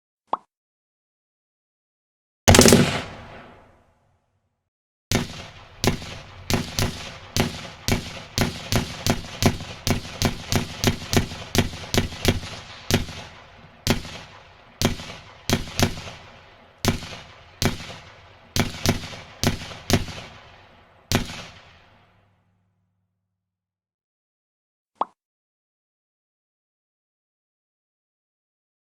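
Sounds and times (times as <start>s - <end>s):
rifle shots echoing: 2.5s - 3.7s, 5.1s - 22.1s.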